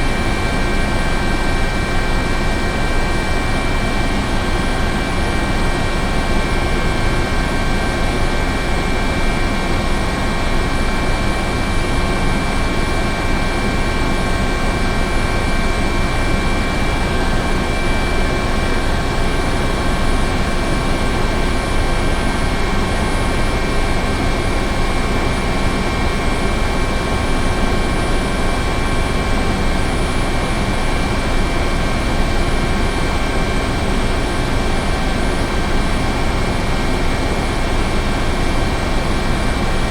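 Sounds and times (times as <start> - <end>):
helicopter rotor and engine rumble: 0.0 - 39.9.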